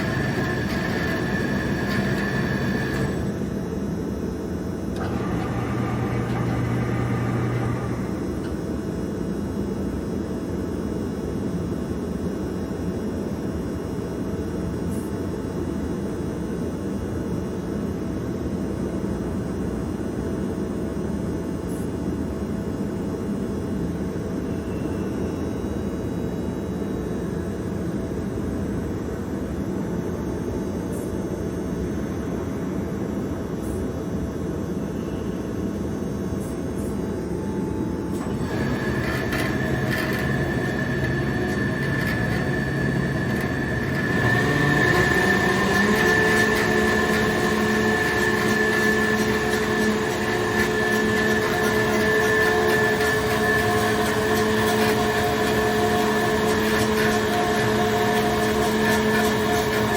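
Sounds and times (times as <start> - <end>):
bandsaw running: 0.0 - 3.8, 5.0 - 8.5, 38.2 - 59.9.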